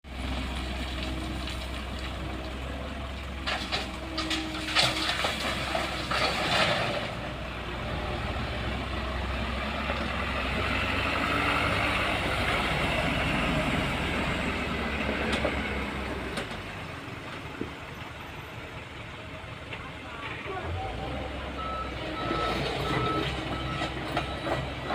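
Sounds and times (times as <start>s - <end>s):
excavator diesel engine working: 0.1s - 24.9s.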